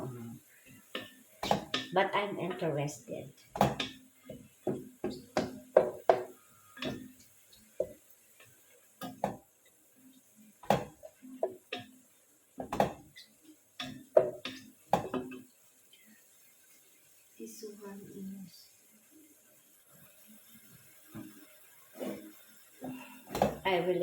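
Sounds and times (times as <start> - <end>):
utensils knocking on cookware: 1.0 - 2.8, 3.6 - 7.2, 12.6 - 13.1, 13.8 - 15.4.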